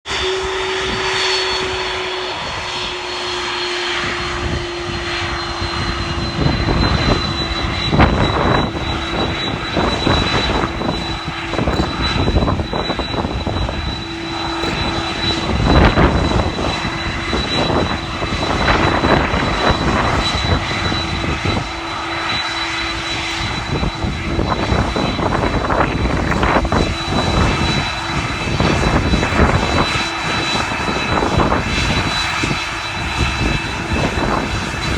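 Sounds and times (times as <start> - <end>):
jet engines whining: 0.0 - 34.9.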